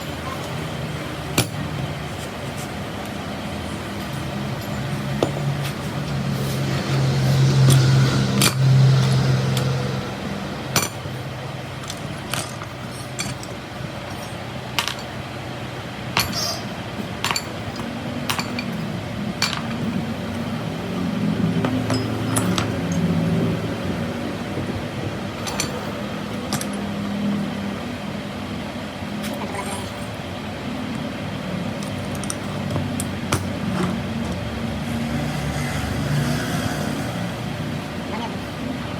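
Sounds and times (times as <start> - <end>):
low engine-like hum: 0.0 - 38.9
metal clinks and taps: 21.6 - 23.1.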